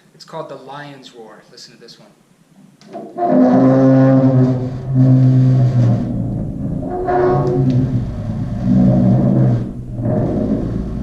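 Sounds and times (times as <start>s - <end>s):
friction drum low growl: 3.1s - 11.0s.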